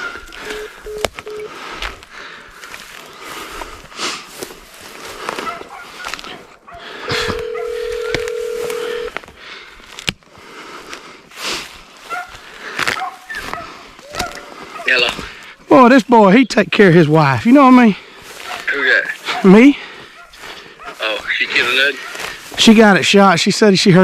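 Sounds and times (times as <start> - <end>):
phone ringback tone: 0.4 - 1.5, 7.1 - 9.2.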